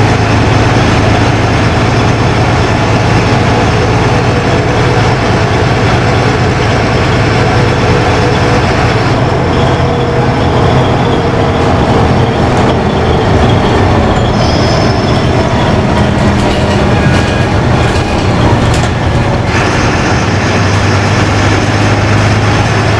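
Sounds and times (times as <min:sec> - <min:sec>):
bus engine rumble: 0:00.0 - 0:22.9
road and body noise: 0:11.7 - 0:22.4.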